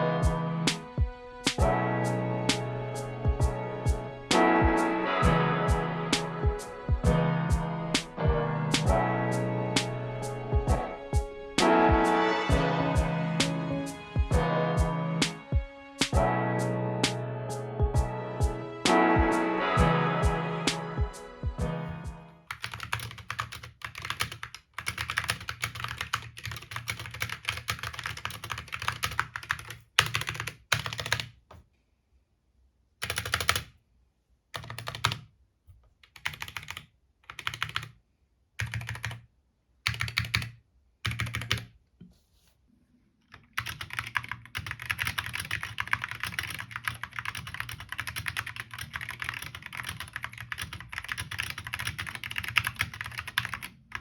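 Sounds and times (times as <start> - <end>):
mechanical keyboard typing: 22.5 - 31.4, 33.0 - 33.8, 34.6 - 35.3, 36.0 - 38.0, 38.6 - 39.2, 39.9 - 41.7, 43.3 - 54.0.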